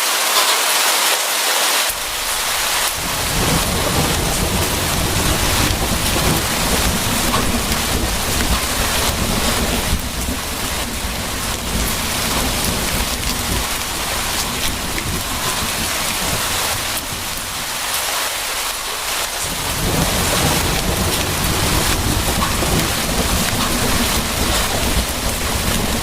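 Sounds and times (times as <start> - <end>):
rain hissing: 0.0 - 26.0
thunder rumbling: 1.9 - 26.0.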